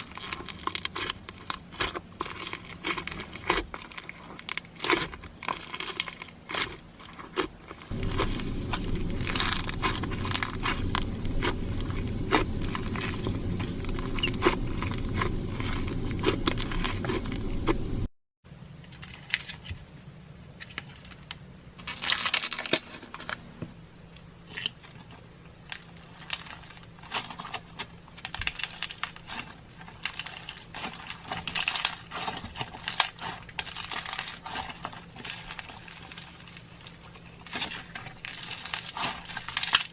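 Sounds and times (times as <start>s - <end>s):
slime clicking and crackling: 0.0s - 18.1s, 24.5s - 39.9s
low steady rumble: 0.0s - 18.8s.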